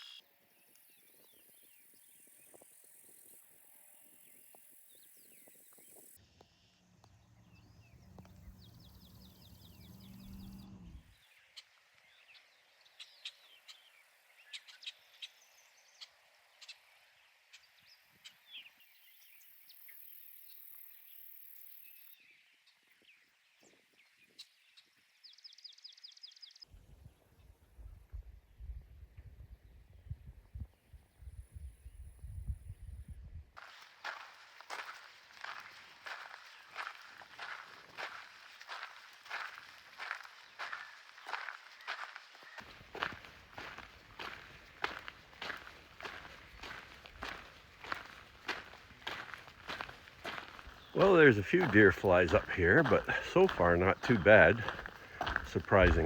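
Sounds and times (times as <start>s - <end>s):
birds singing and calling: 7.4s - 11.6s, 34.6s - 56.0s.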